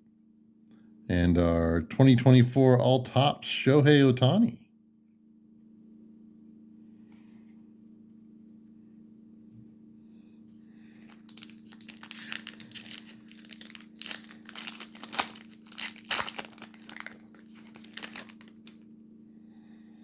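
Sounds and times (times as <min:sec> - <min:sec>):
wrapper tearing and crinkling: 0:11.0 - 0:18.8.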